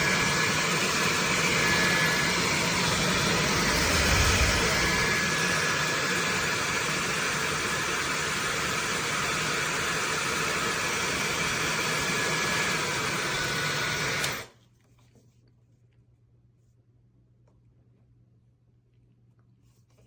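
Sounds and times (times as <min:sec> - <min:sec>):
hair dryer running: 0:00.0 - 0:14.5.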